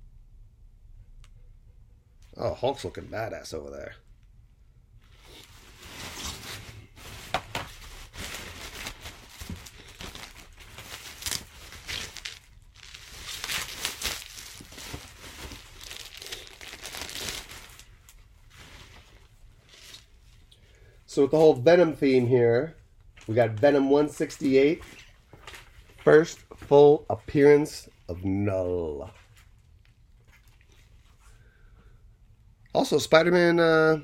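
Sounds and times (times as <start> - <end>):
plastic packing material crinkling: 5.1 - 20.6.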